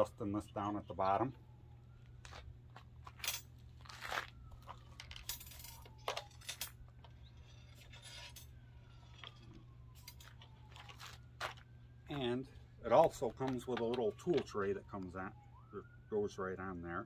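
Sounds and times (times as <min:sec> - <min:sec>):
parts rustling: 0:01.8 - 0:11.8, 0:12.5 - 0:14.6.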